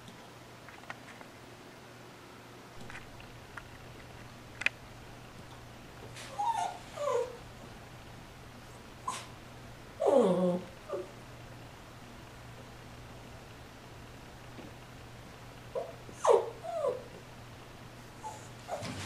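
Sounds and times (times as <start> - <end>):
puppy whimpering squeaks: 6.3 - 7.4, 15.8 - 17.0, 18.2 - 19.0
puppy hiccups: 9.0 - 9.3.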